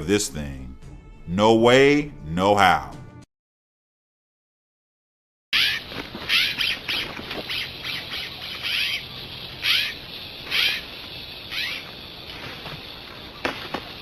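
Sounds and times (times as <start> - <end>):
animal chirping: 5.6 - 12.0.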